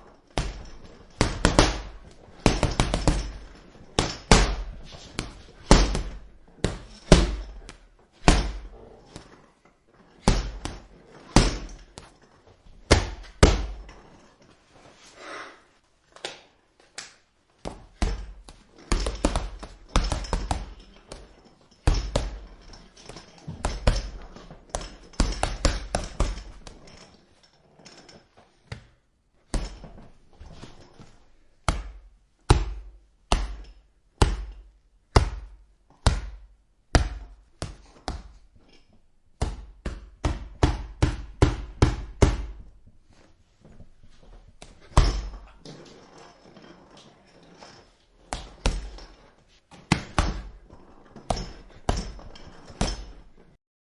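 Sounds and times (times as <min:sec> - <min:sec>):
gloves punching heavy bag: 0:00.3 - 0:09.4, 0:10.2 - 0:12.1, 0:12.7 - 0:13.9, 0:17.6 - 0:26.9, 0:31.7 - 0:38.4, 0:39.4 - 0:42.7, 0:44.6 - 0:45.5, 0:48.3 - 0:49.1, 0:49.8 - 0:53.4.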